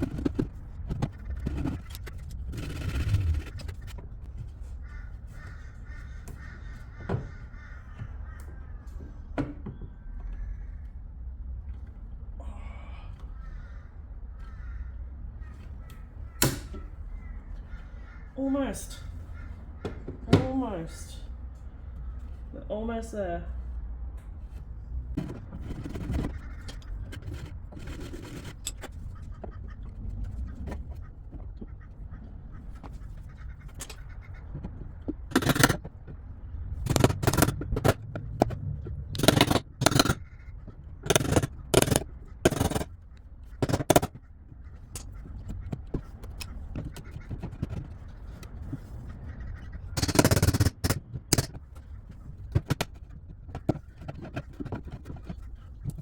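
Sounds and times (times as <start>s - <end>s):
wood chisel scraping timber: 0.0s - 4.2s, 25.1s - 31.8s, 32.6s - 36.2s, 36.8s - 42.9s, 43.5s - 44.2s, 52.2s - 56.0s.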